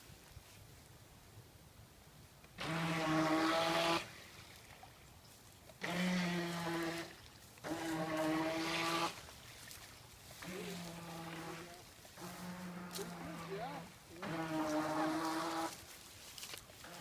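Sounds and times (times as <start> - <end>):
rc boat motor buzzing: 2.6 - 4.1, 5.8 - 9.2, 10.4 - 15.8.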